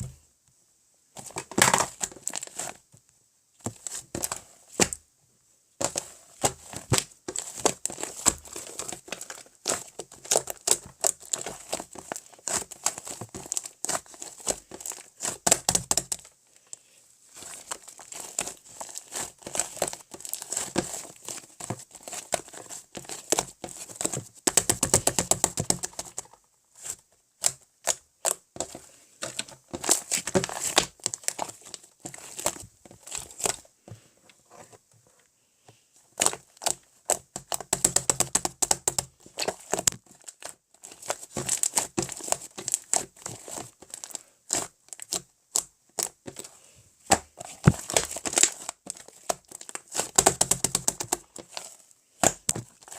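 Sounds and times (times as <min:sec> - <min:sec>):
slime squished by hand: 0:47.1 - 0:52.9.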